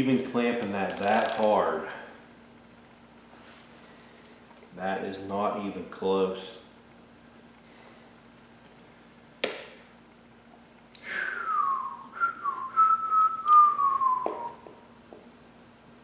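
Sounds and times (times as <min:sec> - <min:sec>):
sharp click: 0:09.4 - 0:09.8
man whistling: 0:11.0 - 0:14.9.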